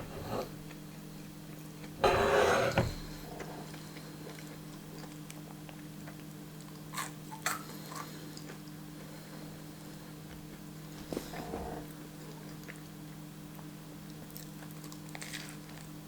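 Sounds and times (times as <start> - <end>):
steady low hum: 0.0 - 6.6
quiet chewing: 3.6 - 9.2, 10.3 - 16.0.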